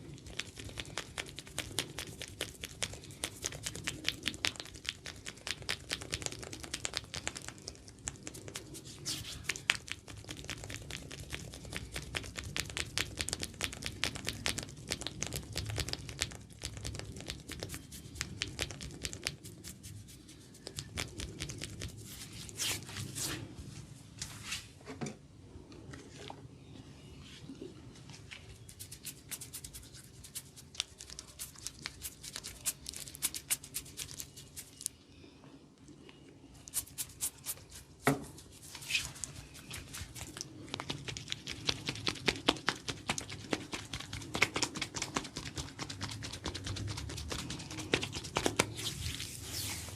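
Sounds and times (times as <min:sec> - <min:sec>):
fingers scratching oiled hair: 0:00.2 - 0:23.4, 0:28.7 - 0:34.9, 0:36.6 - 0:37.9.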